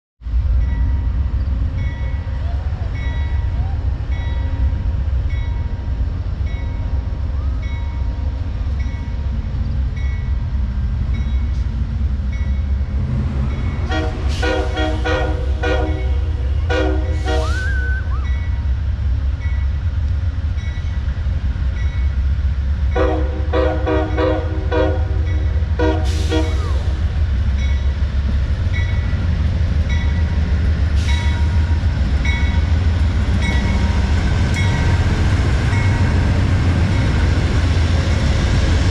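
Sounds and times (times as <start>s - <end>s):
train rumbling: 0.2s - 38.9s
locomotive air horn blasts: 13.8s - 18.2s, 23.0s - 27.0s.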